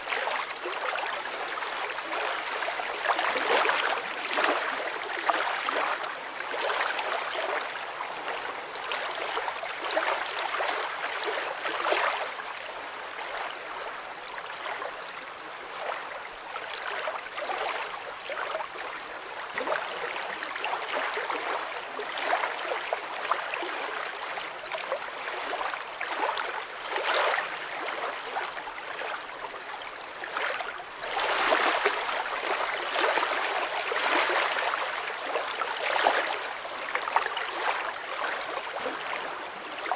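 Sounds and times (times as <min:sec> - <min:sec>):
water flowing and gurgling: 0:25.3 - 0:39.9.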